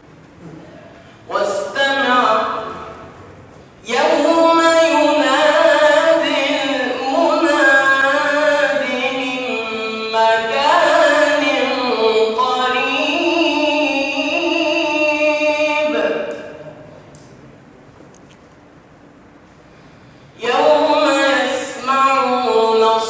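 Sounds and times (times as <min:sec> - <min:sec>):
solo voice reciting melodically: 0:01.3 - 0:03.0, 0:03.8 - 0:16.6, 0:20.4 - 0:23.0.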